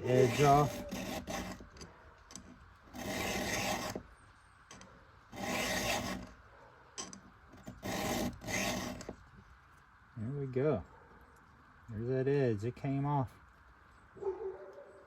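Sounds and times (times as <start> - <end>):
hand file stroking chain: 0.0 - 4.0, 4.7 - 6.3, 7.0 - 9.2.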